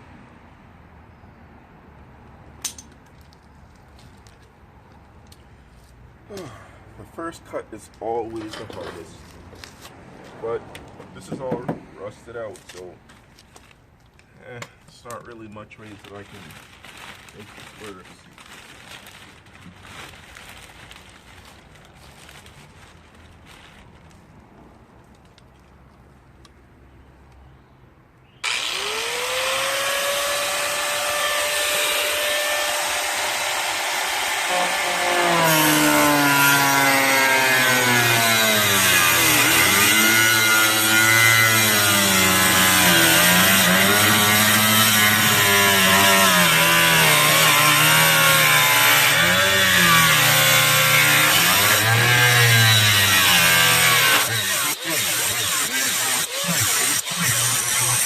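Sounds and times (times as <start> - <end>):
power cutting tool grinding metal: 28.4 - 58.0.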